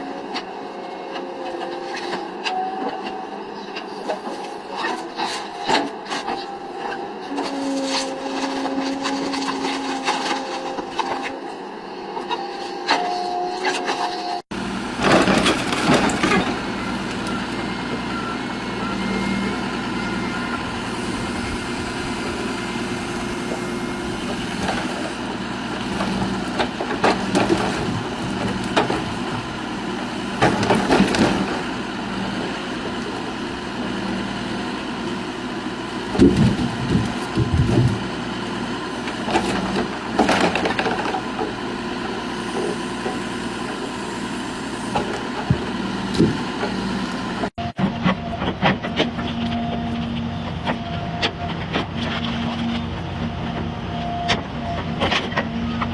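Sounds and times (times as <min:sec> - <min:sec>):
wood-cutting machine running: 0:04.8 - 0:53.4
wood cracking and splintering: 0:14.7 - 0:18.4, 0:19.4 - 0:35.4, 0:36.0 - 0:38.3, 0:39.0 - 0:41.6.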